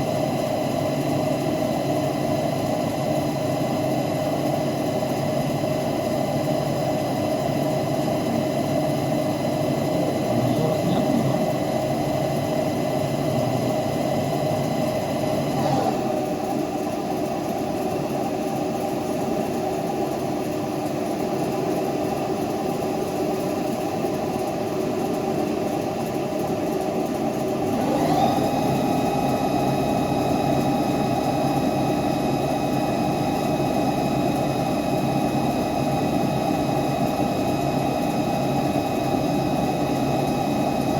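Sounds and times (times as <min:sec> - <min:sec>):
lathe machine hum: 0:00.0 - 0:40.9.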